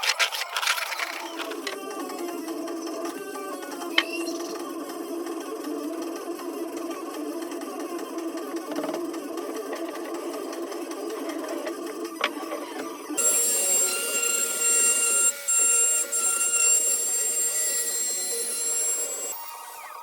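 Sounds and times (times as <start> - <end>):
high steady whine: 13.2 - 20.0
power tool rough hum: 13.2 - 20.0.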